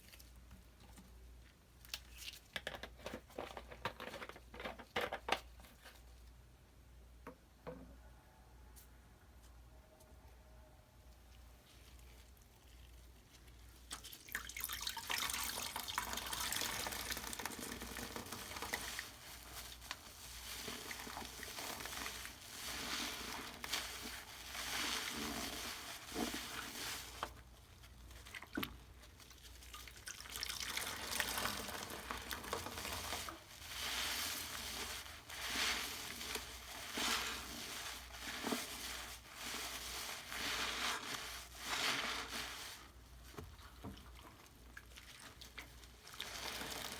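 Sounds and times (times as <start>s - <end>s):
wet squishing and wringing: 11.8s - 46.9s
fine crackle: 16.8s - 28.2s, 30.8s - 43.8s, 45.0s - 46.9s.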